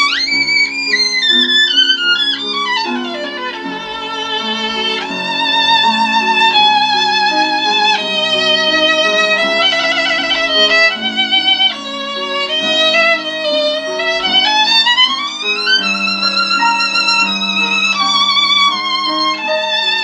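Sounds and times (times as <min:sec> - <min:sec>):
lower accompanying notes: 0:00.0 - 0:20.0
solo violin melody: 0:00.0 - 0:20.0.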